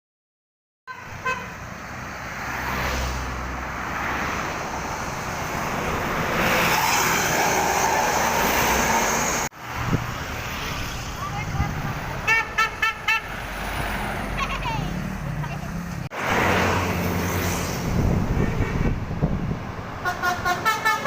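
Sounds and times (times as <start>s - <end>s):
bus engine drone and road noise: 0.9s - 21.0s
horn toot: 12.2s - 13.4s, 18.3s - 19.0s, 20.0s - 21.0s.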